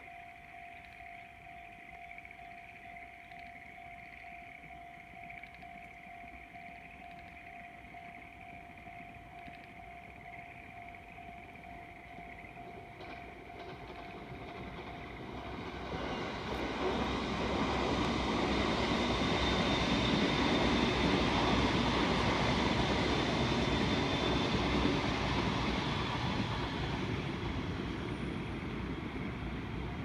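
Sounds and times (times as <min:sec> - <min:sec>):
train wheels on rails: 0:11.0 - 0:30.0.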